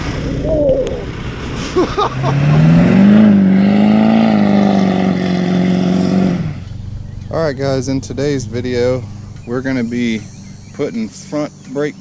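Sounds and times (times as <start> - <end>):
engine revving: 0.0 - 6.9.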